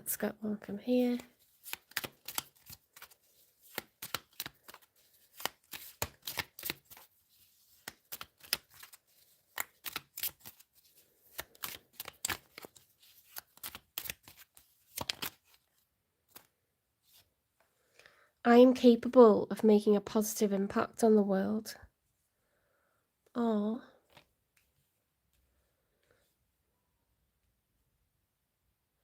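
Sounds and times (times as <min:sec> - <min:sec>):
cards being shuffled: 0:01.0 - 0:17.3, 0:24.0 - 0:24.7.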